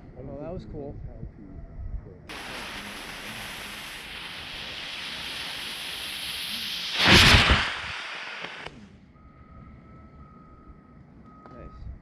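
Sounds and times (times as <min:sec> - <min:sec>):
firework burst: 0:02.3 - 0:08.8
firework rocket hissing: 0:02.3 - 0:08.8.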